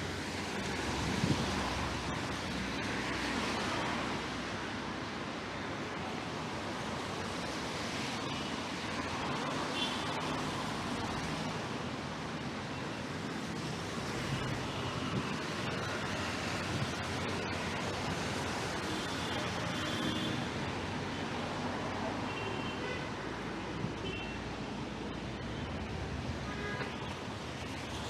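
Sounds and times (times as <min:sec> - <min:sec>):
rain and wind hissing: 0:00.0 - 0:19.7
faint traffic: 0:00.0 - 0:28.0.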